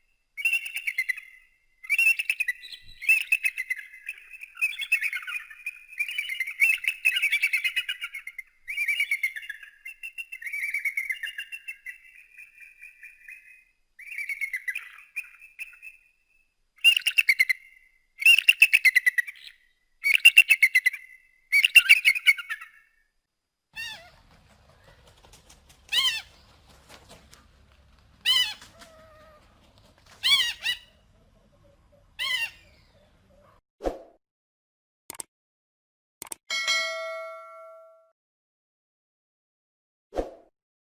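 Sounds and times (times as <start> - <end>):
eagle chattering calls: 23.8 - 33.6
eagle sharp call notes: 23.8 - 33.6.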